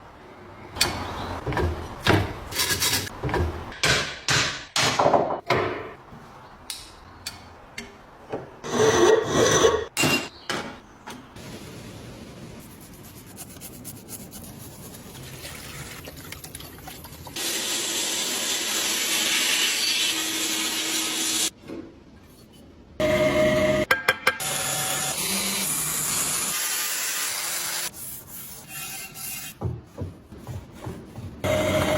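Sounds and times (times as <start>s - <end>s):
scraping and rubbing strokes: 12.6s - 15.2s.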